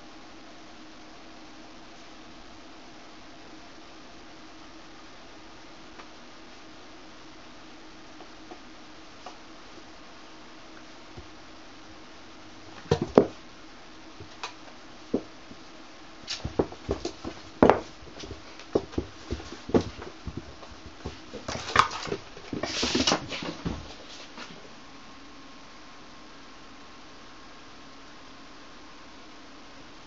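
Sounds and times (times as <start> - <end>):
cats scrabbling: 12.7 - 13.4, 16.2 - 24.4
thumps of cats play-fighting: 12.7 - 13.4, 16.3 - 24.0.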